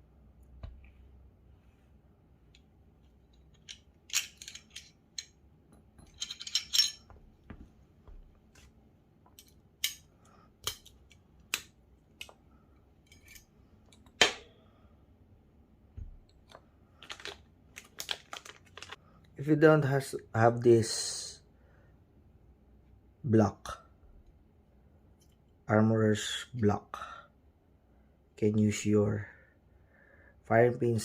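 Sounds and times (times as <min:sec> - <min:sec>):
small metal parts clicking: 0:02.5 - 0:05.4, 0:06.0 - 0:07.1, 0:09.3 - 0:11.6.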